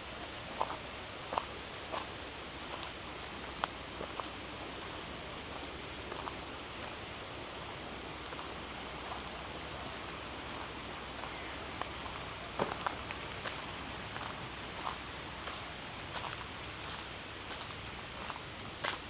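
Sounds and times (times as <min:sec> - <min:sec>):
garden ambience hiss: 0:00.0 - 0:19.0.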